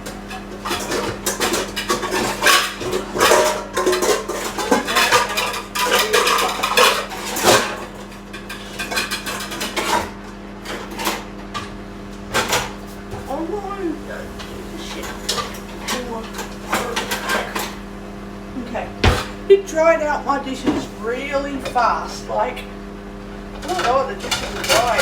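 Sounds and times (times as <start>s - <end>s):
dishes and cutlery clattering: 0.0s - 11.7s, 14.9s - 17.8s, 23.6s - 25.0s.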